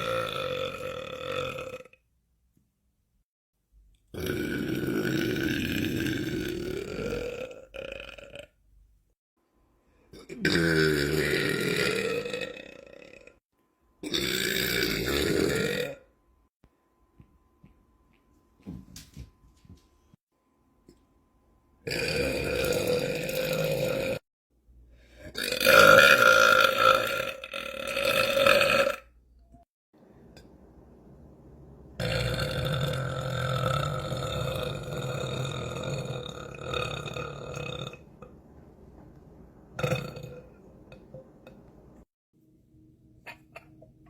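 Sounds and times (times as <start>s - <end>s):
man belching: 0.0s - 2.0s, 4.2s - 8.5s, 10.2s - 13.4s, 14.0s - 16.0s, 21.9s - 24.2s, 25.4s - 29.0s, 32.0s - 38.1s, 39.8s - 40.5s.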